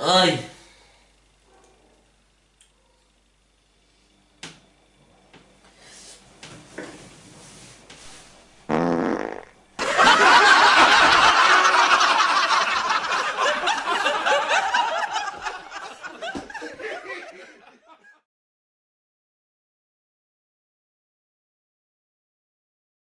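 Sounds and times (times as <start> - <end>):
short fart: 8.7 - 9.6
crowd laughing: 9.8 - 18.3.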